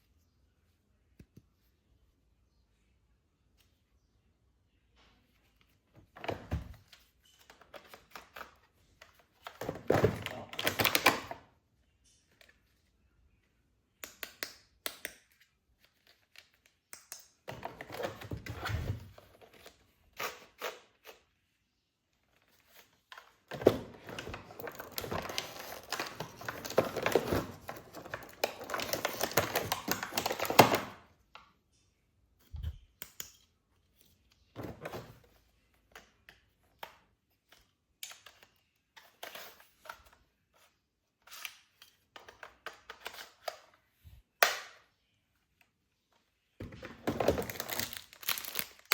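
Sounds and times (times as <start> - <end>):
packaging rustling and tearing: 23.6 - 31.0, 47.0 - 48.9.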